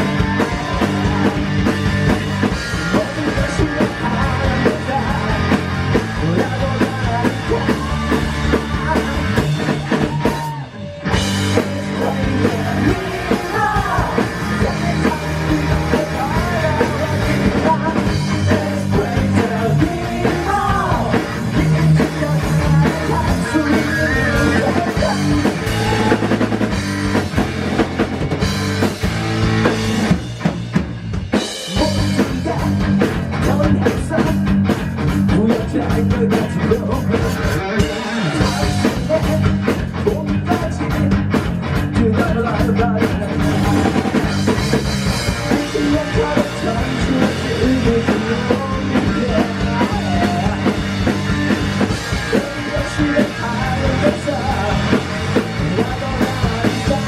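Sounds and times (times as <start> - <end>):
rock band playing live: 0.0 - 57.0
person singing: 2.7 - 26.4, 41.9 - 44.5, 45.2 - 51.2, 52.2 - 57.0.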